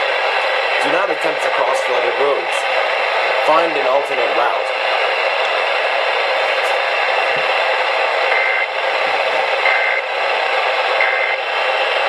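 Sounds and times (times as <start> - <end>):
radio hiss: 0.0 - 12.0
two-tone data bursts: 8.3 - 8.7, 9.6 - 10.1, 11.0 - 11.4.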